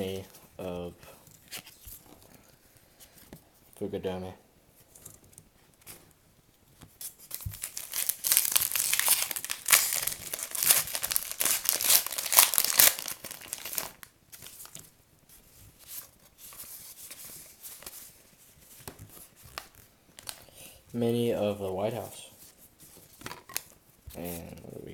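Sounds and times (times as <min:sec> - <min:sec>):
wrapper crinkling and tearing: 0:07.3 - 0:14.7.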